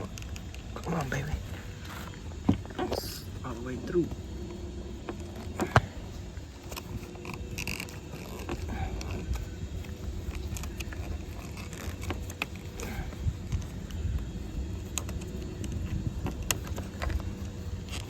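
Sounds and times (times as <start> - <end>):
rustling of wire and plastic: 4.2 - 18.0.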